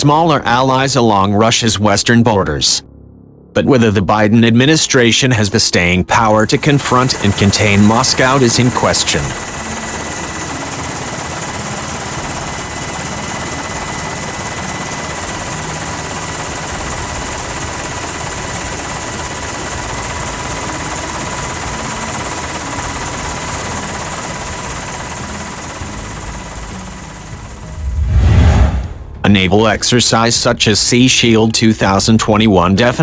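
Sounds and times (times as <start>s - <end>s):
faint high steady tones: 6.4s - 27.9s
steady engine noise: 6.4s - 29.3s.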